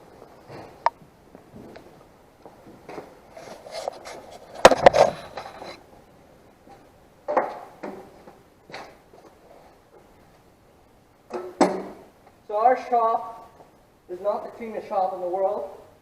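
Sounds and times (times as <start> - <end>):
clunks and knocks of tools: 7.3 - 8.1, 11.3 - 12.0.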